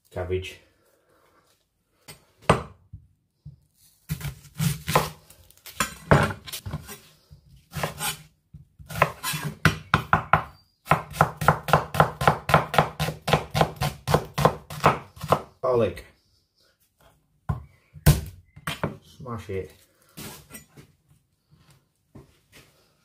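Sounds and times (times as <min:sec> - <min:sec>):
knife chopping cabbage on board: 0:08.8 - 0:15.5.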